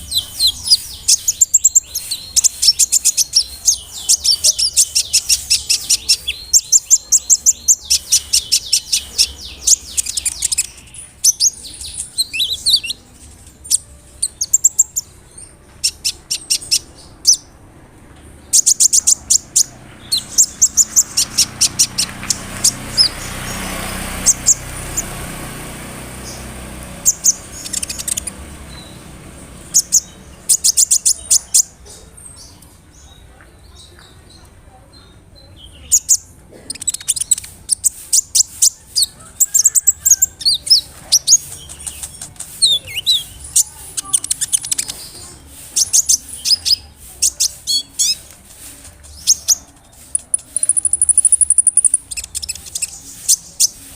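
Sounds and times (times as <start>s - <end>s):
sunbird chirps and trills: 0.0s - 17.6s, 18.4s - 53.9s
soft rushing noise: 16.9s - 30.7s.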